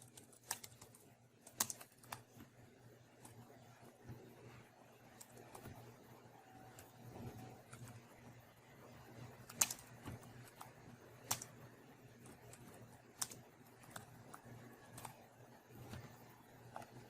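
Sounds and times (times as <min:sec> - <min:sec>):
computer keyboard clicks: 0:00.0 - 0:02.2, 0:09.4 - 0:11.6, 0:12.2 - 0:15.2.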